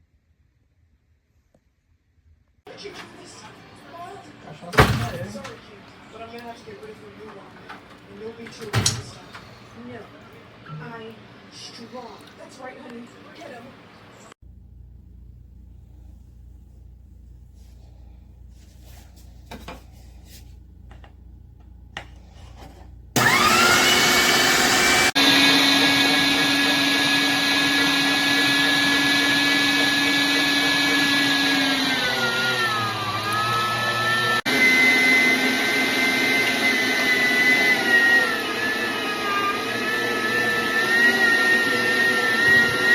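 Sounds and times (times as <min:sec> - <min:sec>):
meat grinder motor whining: 0:23.2 - 0:42.9.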